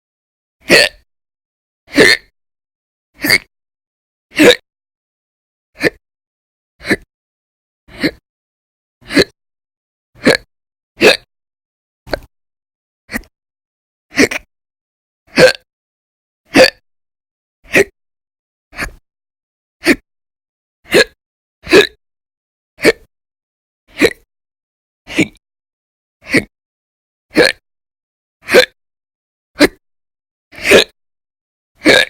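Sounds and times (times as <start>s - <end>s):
person hiccuping: 0.7s - 1.0s, 1.9s - 2.3s, 3.2s - 3.5s, 4.3s - 4.6s, 5.8s - 6.0s, 9.0s - 9.4s, 10.2s - 11.3s, 12.1s - 12.3s, 14.1s - 14.5s, 15.3s - 15.7s, 16.5s - 16.8s, 17.7s - 18.0s, 19.8s - 20.0s, 20.9s - 22.0s, 22.8s - 23.1s, 23.9s - 24.3s, 25.1s - 25.4s, 27.3s - 27.6s, 28.4s - 28.8s, 29.6s - 29.8s, 30.6s - 31.0s, 31.8s - 32.0s.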